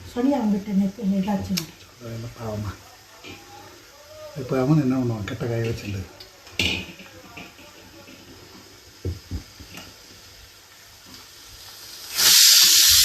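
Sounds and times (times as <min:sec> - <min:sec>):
pressure cooker steam hissing: 0:06.6 - 0:13.0.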